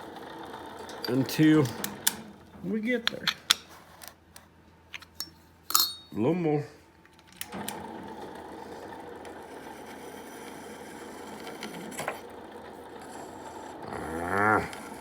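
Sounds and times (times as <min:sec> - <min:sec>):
electric grinder on metal: 0:08.5 - 0:15.0.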